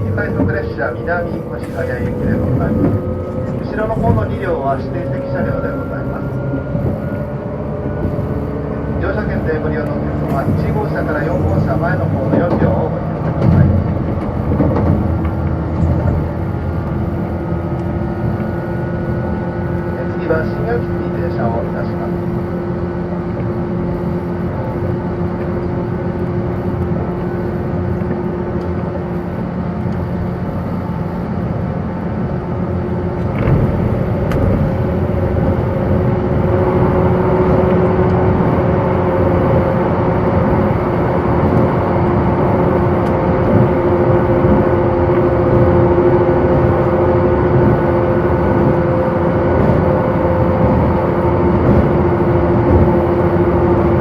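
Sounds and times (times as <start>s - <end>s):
electric train hum: 0.0s - 54.0s
wheels rumbling: 0.0s - 54.0s.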